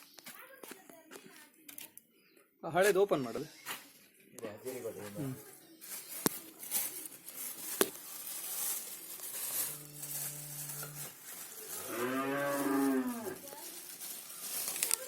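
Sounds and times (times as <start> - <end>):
cow mooing: 9.7 - 11.1, 11.8 - 13.4.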